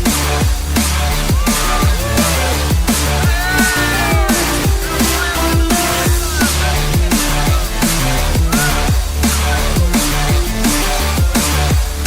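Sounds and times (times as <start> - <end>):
deep kick drums: 0.0 - 12.0
electronic dance music: 0.0 - 12.0
synth notes: 0.0 - 12.0.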